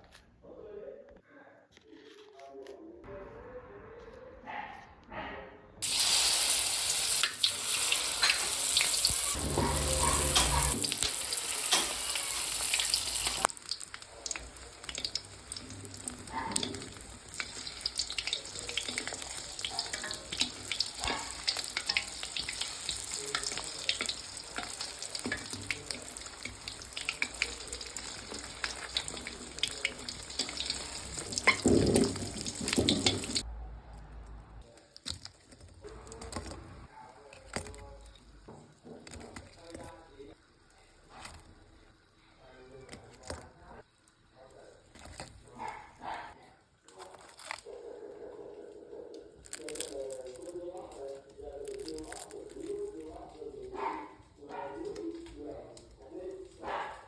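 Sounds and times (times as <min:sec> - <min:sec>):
food sizzling in a pan: 0:05.8 - 0:33.4.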